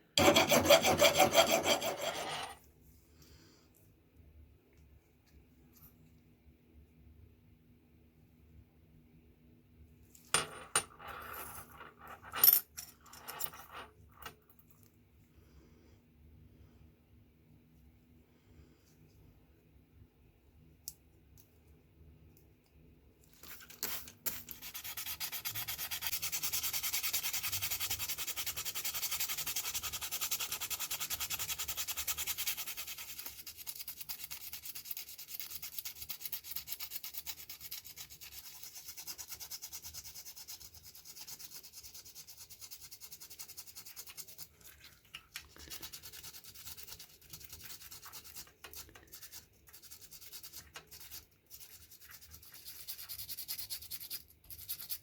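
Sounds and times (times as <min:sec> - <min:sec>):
scratchy sanding rasp: 0:00.2 - 0:02.6, 0:24.6 - 0:44.3.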